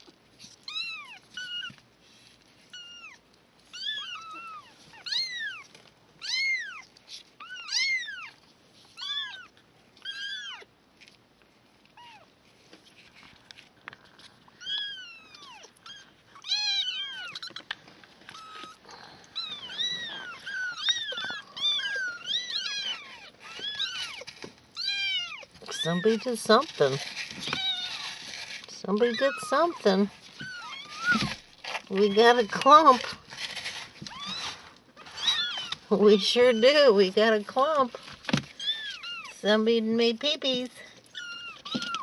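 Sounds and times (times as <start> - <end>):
kittens mewing: 14.6 - 26.3.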